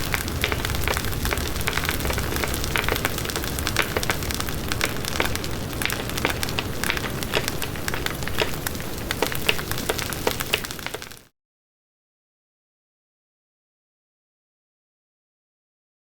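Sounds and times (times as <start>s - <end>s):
hissing noise with crackles: 0.0s - 11.3s.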